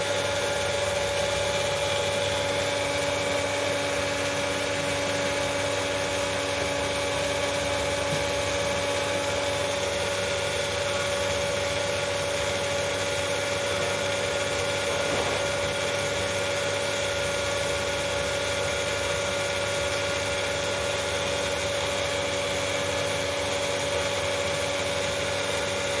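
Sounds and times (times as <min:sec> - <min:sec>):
high steady whine: 0:00.0 - 0:18.4
pool pump motor hum: 0:00.0 - 0:26.0
flowing water: 0:00.1 - 0:20.2.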